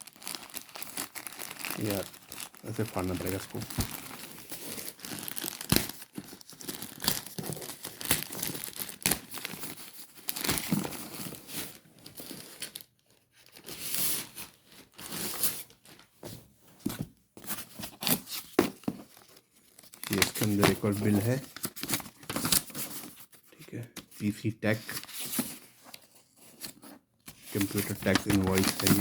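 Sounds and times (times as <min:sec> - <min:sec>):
packaging tearing and crinkling: 0:00.0 - 0:11.4, 0:19.8 - 0:23.1, 0:27.5 - 0:29.0.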